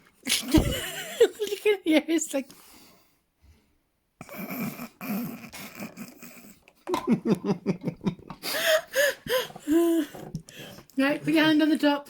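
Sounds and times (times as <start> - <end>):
person laughing: 0.3 - 1.7, 5.4 - 10.1.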